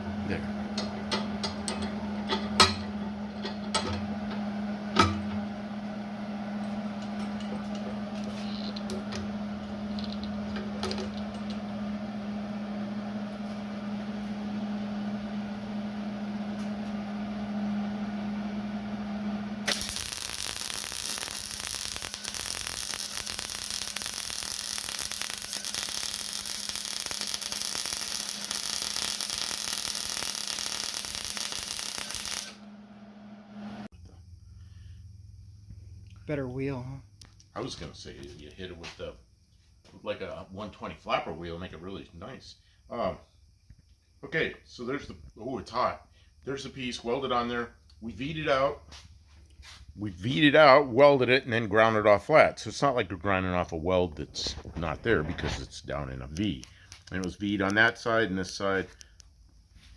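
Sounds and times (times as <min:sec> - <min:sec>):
electric grinder grinding steel: 0:19.7 - 0:32.6.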